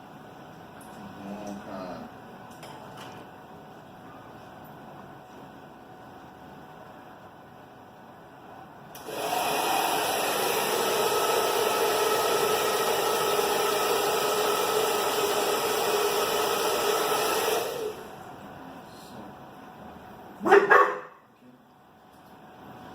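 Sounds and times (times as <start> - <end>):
hair dryer blowing: 9.0 - 18.3.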